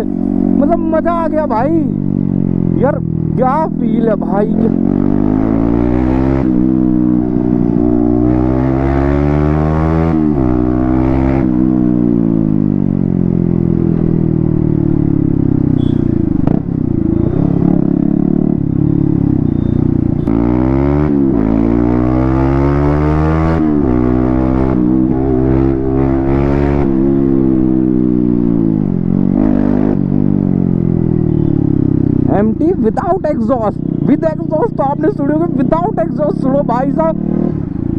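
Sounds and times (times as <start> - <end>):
motorcycle engine with open exhaust: 10.1 - 22.3, 26.6 - 37.9.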